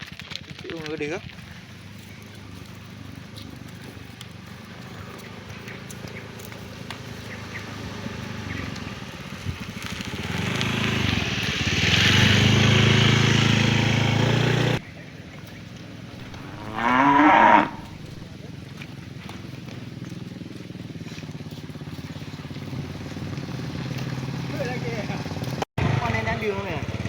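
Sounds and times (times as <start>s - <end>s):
vehicle engine running: 12.1s - 14.9s.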